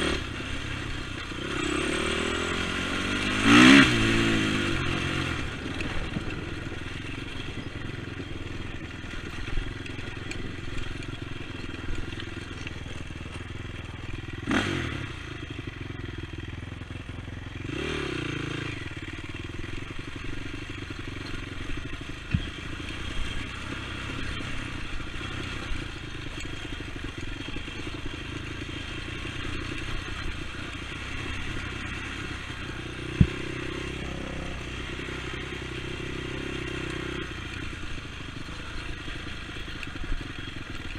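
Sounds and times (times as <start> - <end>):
atv engine running: 0.0 - 40.9.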